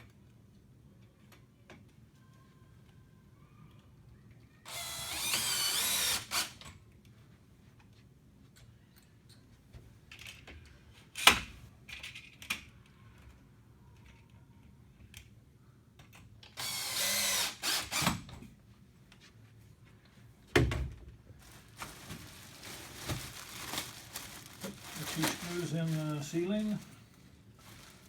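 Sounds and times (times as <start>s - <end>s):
power drill bursts: 4.7s - 6.6s, 16.6s - 18.2s.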